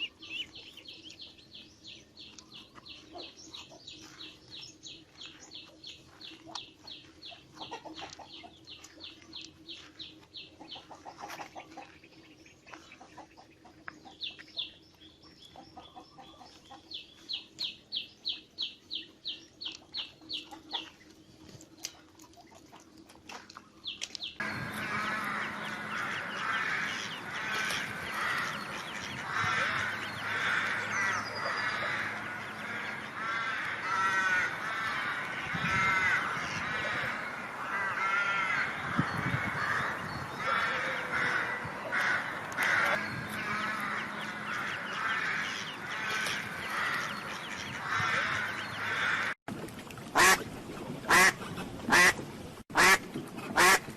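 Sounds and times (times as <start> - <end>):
ducks quacking: 24.4 - 49.4, 50.2 - 50.4, 51.1 - 53.9.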